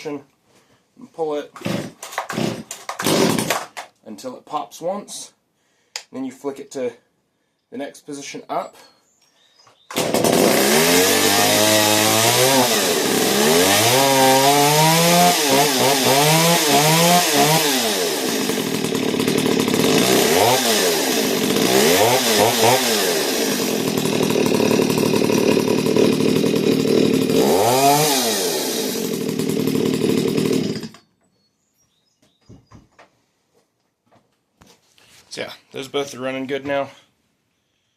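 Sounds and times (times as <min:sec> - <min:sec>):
chainsaw engine revving: 0:01.6 - 0:03.8, 0:09.9 - 0:31.0.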